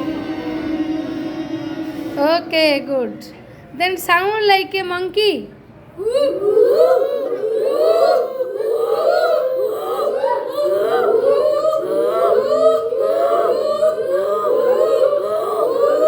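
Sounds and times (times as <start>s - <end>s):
children imitating monkey calls: 6.0s - 16.0s.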